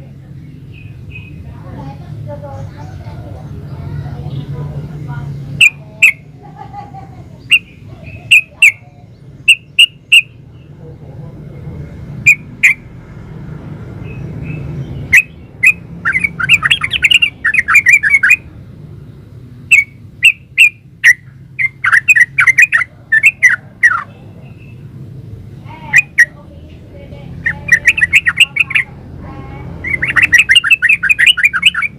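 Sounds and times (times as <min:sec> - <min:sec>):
bird chirping and chattering: 0:00.0 - 0:13.0, 0:13.9 - 0:31.9.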